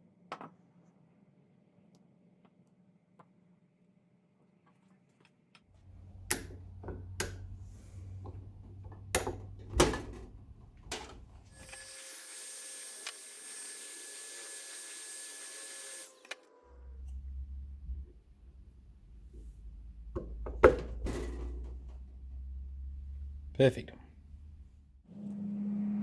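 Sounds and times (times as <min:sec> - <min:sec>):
metal knocks and clicks: 0:05.9 - 0:11.4, 0:20.0 - 0:22.1
power tool whining: 0:11.0 - 0:17.8
low hum: 0:16.5 - 0:26.0.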